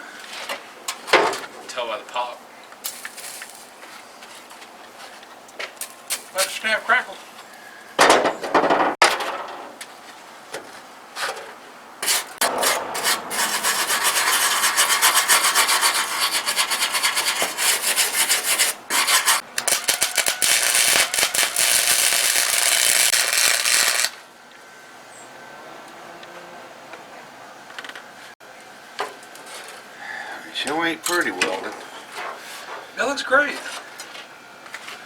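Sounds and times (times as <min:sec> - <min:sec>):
welding arc crackling: 0:18.2 - 0:24.2.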